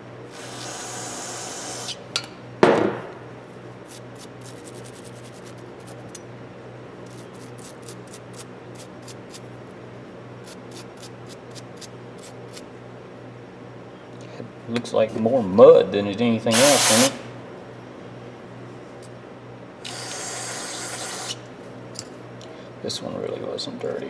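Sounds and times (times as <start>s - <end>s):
brief sharp burst: 16.5s - 17.3s
short hiss: 16.6s - 17.3s.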